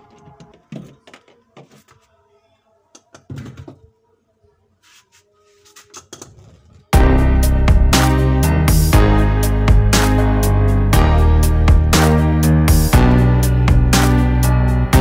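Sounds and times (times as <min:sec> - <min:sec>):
loud music: 0:07.0 - 0:15.0.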